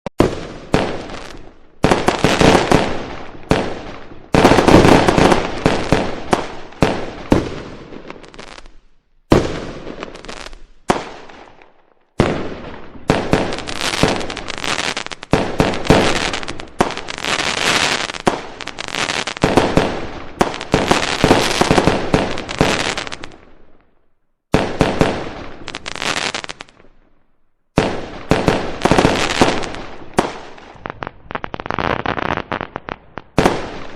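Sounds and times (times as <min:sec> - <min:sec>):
firecrackers going off: 0:12.3 - 0:23.3.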